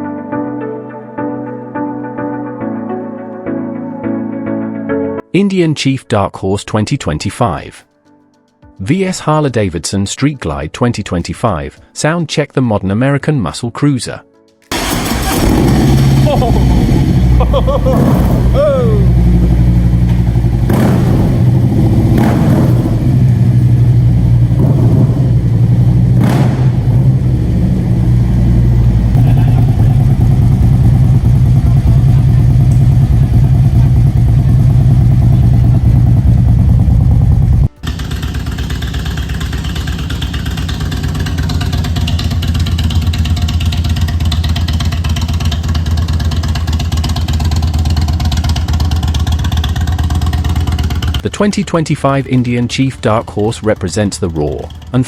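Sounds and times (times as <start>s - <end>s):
motorcycle engine revving: 14.7s - 55.0s.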